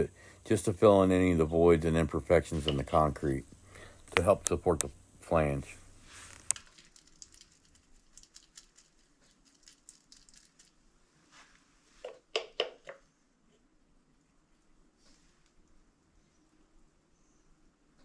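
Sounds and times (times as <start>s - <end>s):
soft handling noises: 5.6s - 7.0s.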